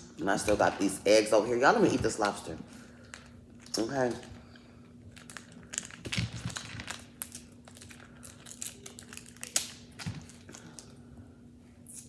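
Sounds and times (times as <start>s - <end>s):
lobster shell cracking and clicking: 5.1s - 10.9s.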